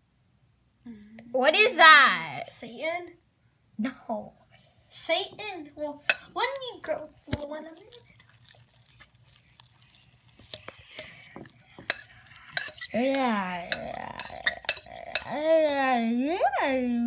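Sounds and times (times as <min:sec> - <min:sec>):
slime squishing sticky clicks: 0:06.1 - 0:09.5.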